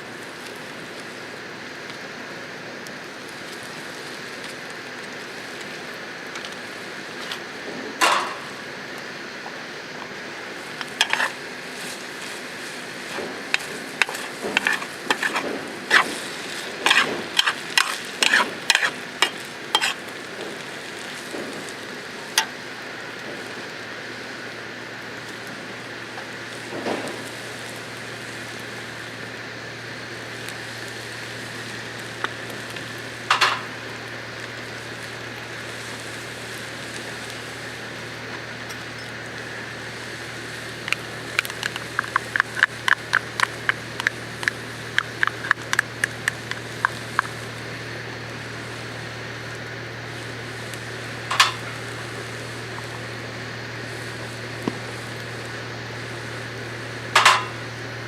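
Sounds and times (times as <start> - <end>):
food sizzling in a pan: 0.0 - 58.0
utensil clicking and scraping: 10.8 - 12.4, 13.1 - 20.0, 40.8 - 47.4.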